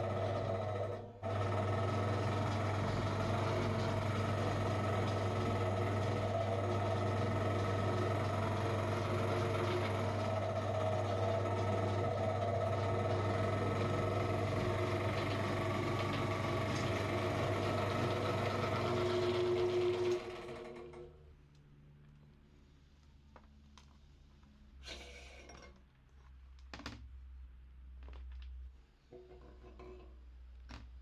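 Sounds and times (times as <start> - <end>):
meat grinder motor humming: 0.0 - 21.0.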